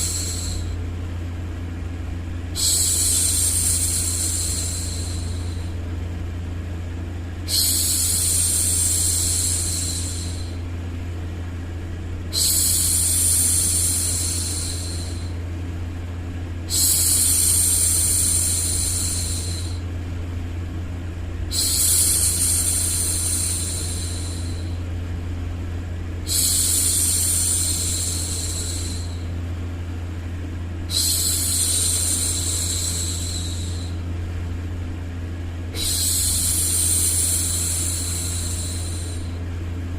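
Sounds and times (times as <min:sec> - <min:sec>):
low white-noise hum: 0:00.0 - 0:39.9
woman shushing: 0:07.5 - 0:10.6, 0:12.3 - 0:15.3, 0:30.9 - 0:34.0, 0:35.8 - 0:39.4.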